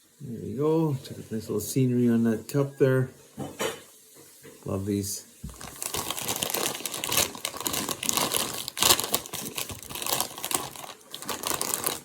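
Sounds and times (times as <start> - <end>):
chip bag crinkling: 5.4 - 12.0.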